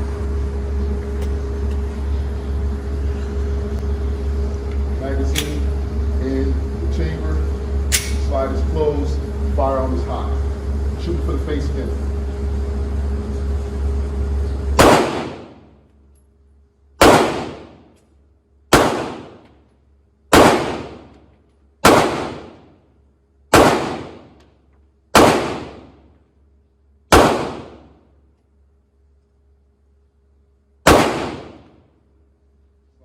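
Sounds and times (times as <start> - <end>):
steady low hum: 0.0 - 33.0
pistol shots with echo: 14.8 - 15.8, 17.0 - 17.9, 18.7 - 19.5, 20.3 - 21.2, 21.8 - 22.8, 23.5 - 24.4, 25.1 - 26.1, 27.1 - 28.0, 30.8 - 31.8.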